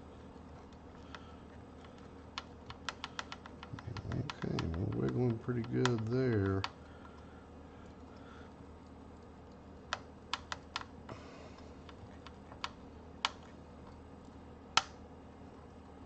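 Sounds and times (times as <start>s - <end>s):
metal tool clicking on circuit board: 2.4s - 6.8s.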